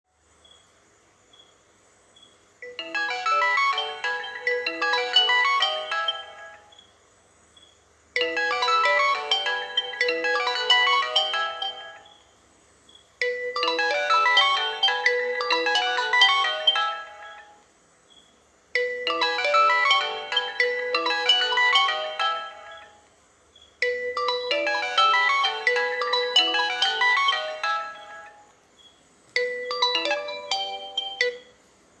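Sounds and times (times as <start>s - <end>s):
smartphone alarm melody: 2.6s - 6.8s, 8.2s - 12.3s, 13.2s - 17.6s, 18.8s - 23.1s, 23.8s - 28.5s, 29.4s - 31.7s.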